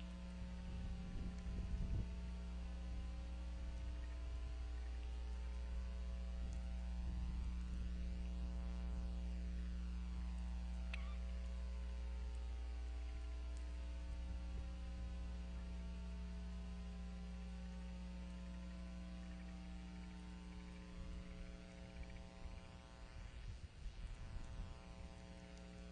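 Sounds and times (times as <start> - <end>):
electrical mains hum: 0.0 - 25.9
faint short chirp: 10.9 - 11.3.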